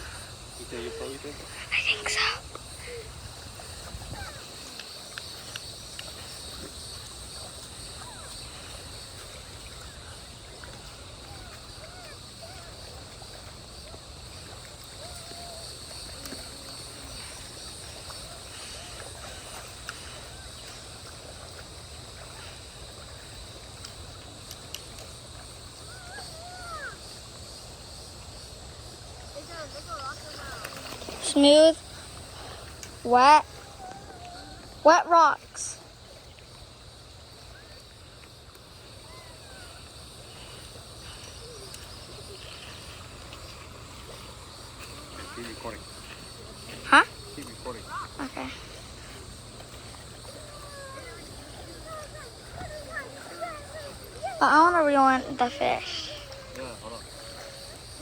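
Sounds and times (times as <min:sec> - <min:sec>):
high insect drone: 0:00.0 - 0:58.0
rushing water: 0:00.0 - 0:58.0
wind: 0:00.0 - 0:58.0.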